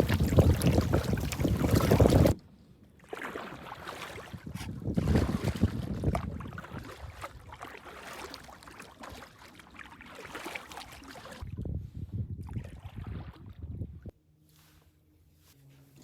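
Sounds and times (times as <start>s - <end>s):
wind buffeting microphone: 0.0s - 2.4s, 4.1s - 7.5s, 11.4s - 14.2s
paddle dipping and water splashing: 0.0s - 11.6s, 12.4s - 13.8s.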